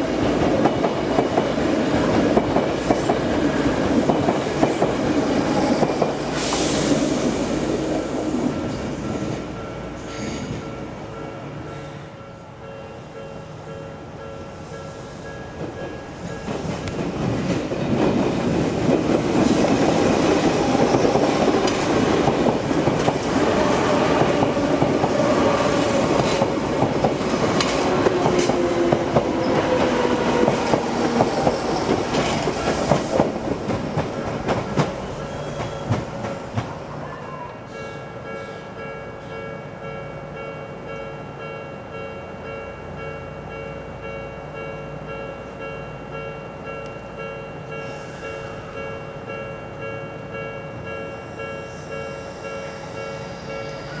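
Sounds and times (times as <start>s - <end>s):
train wheels clattering on rail joints: 0.1s - 7.4s, 15.4s - 36.9s.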